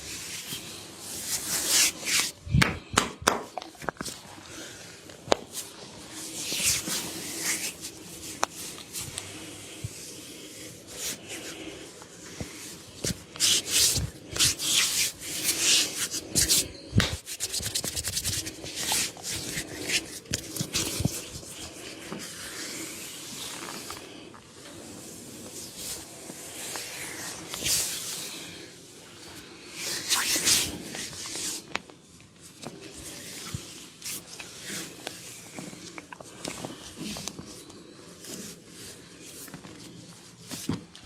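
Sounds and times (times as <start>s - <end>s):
hands rubbing skin: 0.1s - 4.7s, 5.3s - 24.2s, 29.8s - 31.8s.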